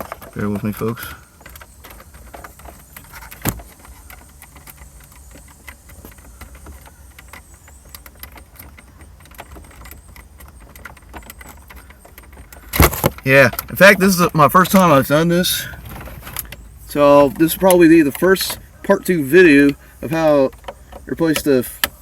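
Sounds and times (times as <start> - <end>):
plastic clicks and rattles: 0.0 - 15.1.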